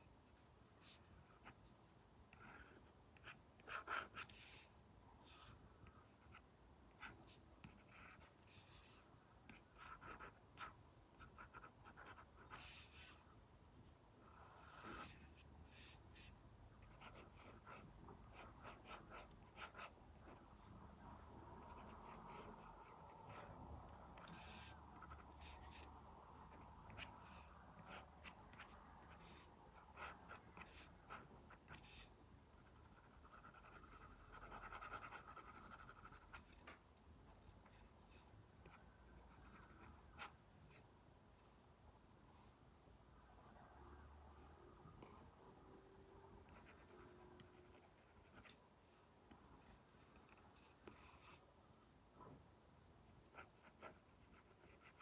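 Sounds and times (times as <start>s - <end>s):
stylus scratching on tablet: 6.2s - 13.3s, 14.4s - 20.8s, 21.6s - 36.6s, 38.6s - 40.4s, 46.5s - 48.6s, 53.3s - 55.0s.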